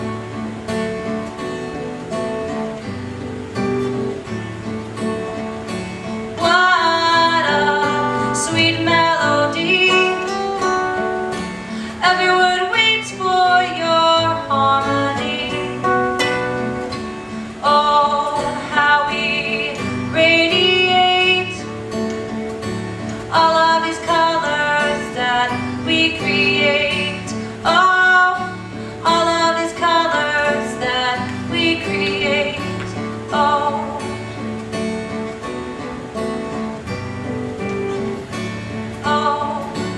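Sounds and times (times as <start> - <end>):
strummed acoustic guitar: 0.0 - 39.9
person singing: 6.4 - 16.4, 17.6 - 21.7, 23.2 - 34.2, 39.0 - 39.9.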